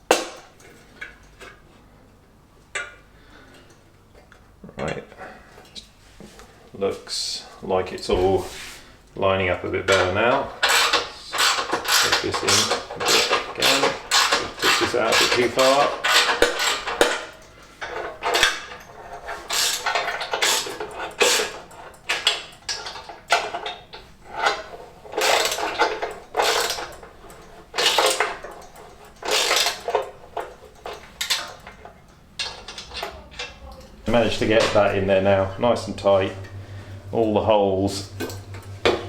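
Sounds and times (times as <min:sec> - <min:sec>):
metallic clanks and scrapes: 0:09.9 - 0:37.2.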